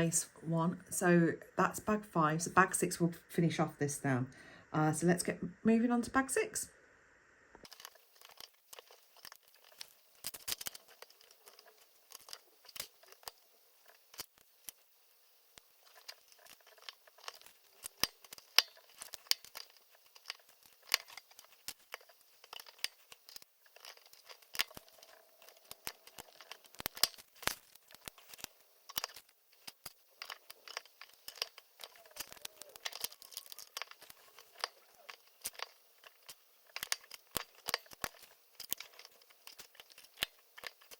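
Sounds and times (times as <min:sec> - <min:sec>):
plastic pieces clicking and clattering: 0:07.6 - 0:14.9, 0:15.5 - 0:40.9
rustling handling: 0:07.6 - 0:40.9.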